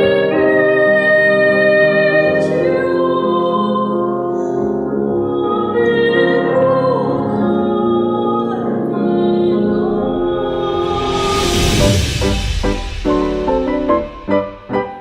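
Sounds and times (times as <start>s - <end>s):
sustained accompaniment: 9.4s - 15.0s.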